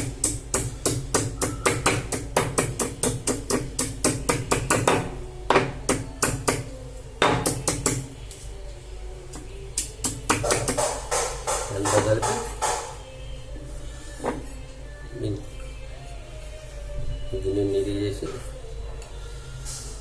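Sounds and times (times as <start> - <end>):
pestle pounding in mortar: 0.0 - 8.1, 9.8 - 12.9.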